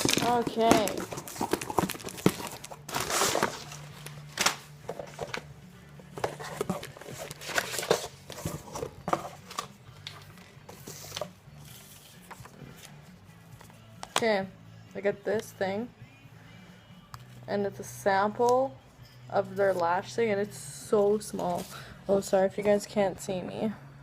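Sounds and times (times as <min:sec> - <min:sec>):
packaging crinkling and rustling: 0:00.0 - 0:05.4.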